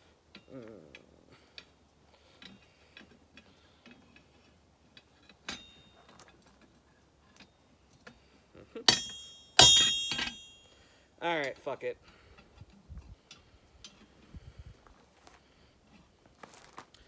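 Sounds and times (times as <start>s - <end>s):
hammer tapping steel on anvil: 8.9s - 10.7s
ringing hammer strike: 8.9s - 10.7s.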